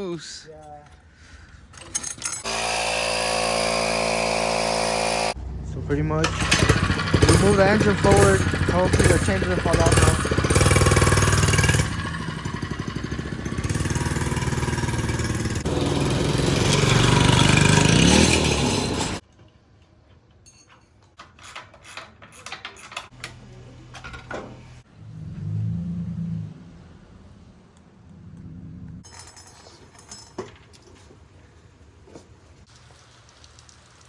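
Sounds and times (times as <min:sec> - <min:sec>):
mini bike engine revving: 0:02.4 - 0:19.2.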